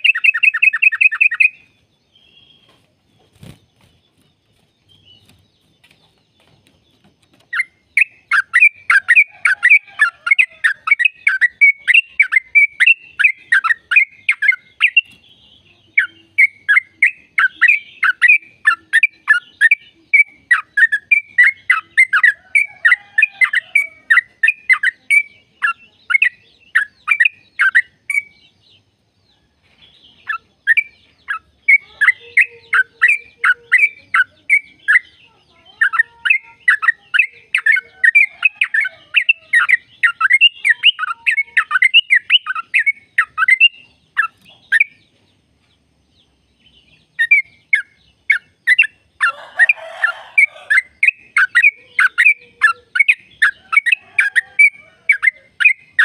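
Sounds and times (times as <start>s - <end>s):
bird singing fast notes: 0.0s - 1.7s.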